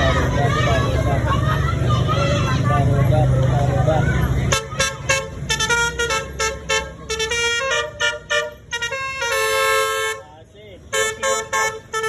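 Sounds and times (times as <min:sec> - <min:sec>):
multi-tone bus horn tune: 0:04.5 - 0:12.0.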